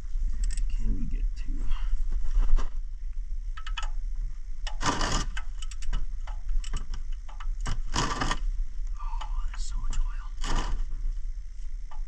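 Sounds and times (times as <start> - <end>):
torque wrench ratchet clicking: 4.6 - 8.4.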